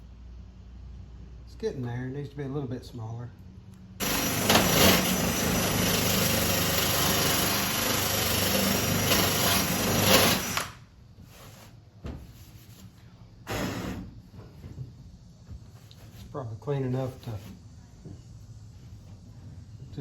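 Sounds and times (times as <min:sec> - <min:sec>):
electric grinder on sheet steel: 0:04.0 - 0:10.8.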